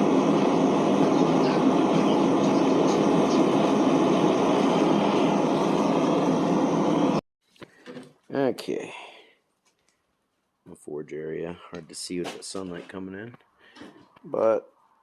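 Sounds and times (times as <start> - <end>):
forge roaring: 0.0 - 7.2.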